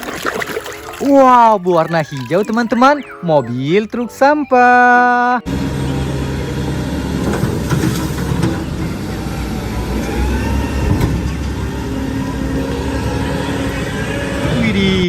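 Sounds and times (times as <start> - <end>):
truck engine idling: 3.0 - 15.0.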